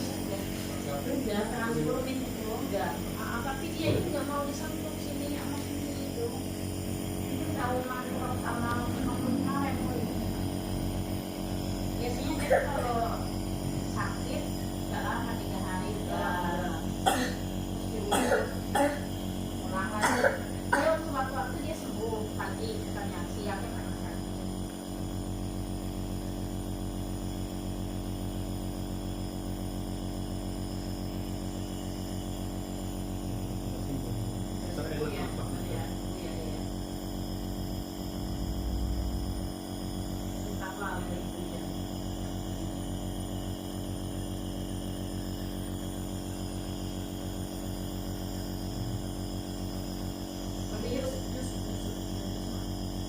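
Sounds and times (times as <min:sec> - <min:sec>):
nebulizer motor humming: 0:00.0 - 0:53.0.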